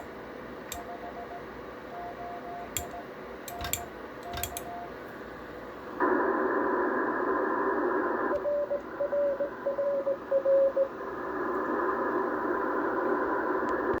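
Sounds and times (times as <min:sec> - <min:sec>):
radio receiver hiss: 0:00.0 - 0:00.9, 0:05.0 - 0:14.0
morse code tone: 0:00.7 - 0:05.0.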